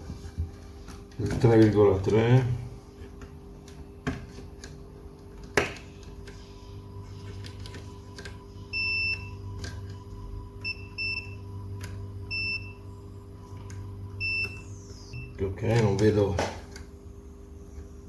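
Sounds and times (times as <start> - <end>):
multimeter beeps: 8.5 - 9.5, 10.6 - 13.0, 13.7 - 16.2.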